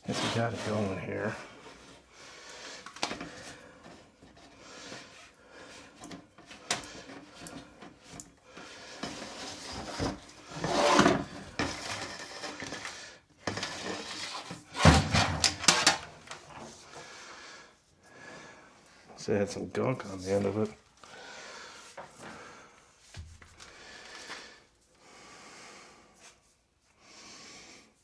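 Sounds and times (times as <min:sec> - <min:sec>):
rubbing and scraping in duct: 0:00.0 - 0:02.8, 0:08.7 - 0:16.7.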